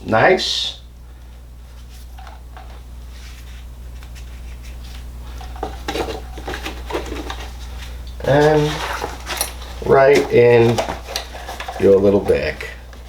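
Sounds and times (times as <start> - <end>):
steady low hum: 0.0 - 13.0
clicks and rattles of handled wires: 5.4 - 13.0.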